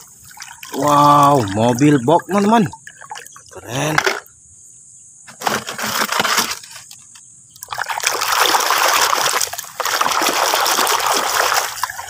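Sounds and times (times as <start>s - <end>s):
water splashing and trickling: 0.0s - 4.3s, 7.6s - 12.0s.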